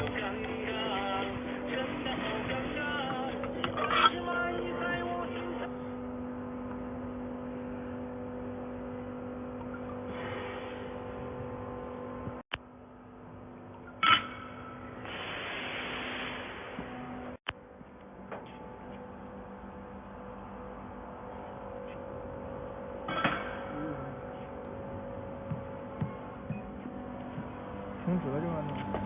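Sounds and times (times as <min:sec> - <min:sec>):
laser welding machine humming: 0:00.0 - 0:29.0
hiss: 0:15.0 - 0:16.9.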